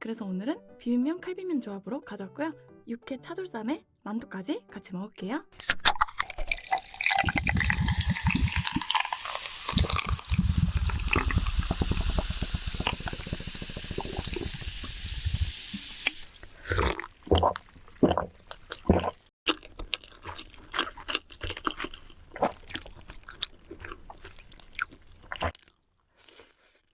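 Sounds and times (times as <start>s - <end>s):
noodles sloshing in liquid: 5.6s - 12.2s, 16.0s - 19.3s.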